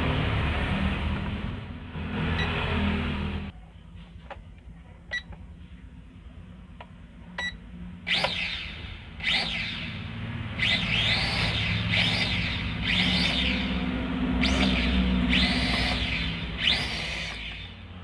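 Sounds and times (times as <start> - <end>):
toy drone motors revving: 8.1 - 17.8.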